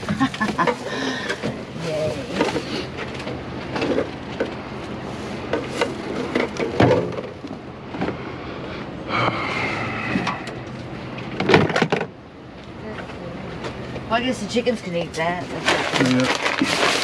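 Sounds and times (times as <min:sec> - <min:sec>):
knocks and clunks of items: 0:05.5 - 0:08.2, 0:11.2 - 0:12.2
rustling: 0:15.5 - 0:17.0.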